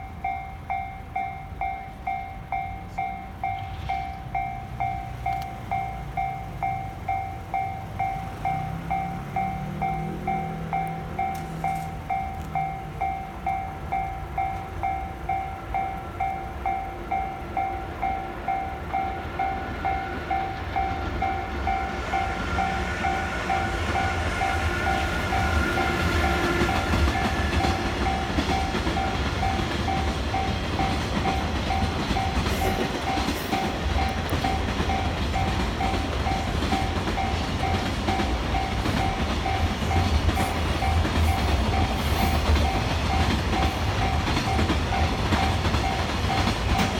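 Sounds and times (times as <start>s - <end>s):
level-crossing bell ringing: 0.0s - 46.9s
train rumble and wheel clatter: 0.0s - 46.9s.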